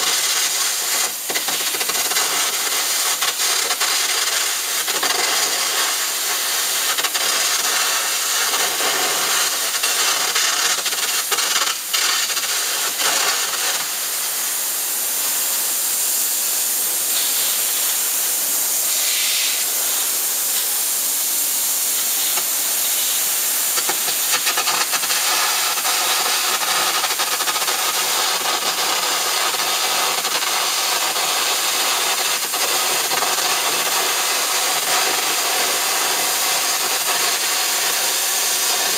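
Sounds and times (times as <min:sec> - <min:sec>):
arc gouging hiss and crackle: 0:00.0 - 0:38.9.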